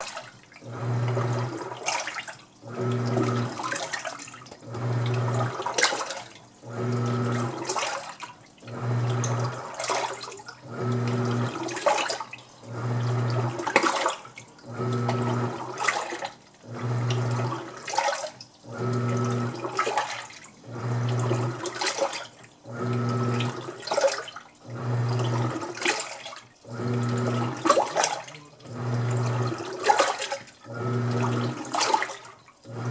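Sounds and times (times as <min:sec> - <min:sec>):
washing machine motor humming: 0:00.0 - 0:32.9
water sloshing and splashing: 0:00.0 - 0:32.9.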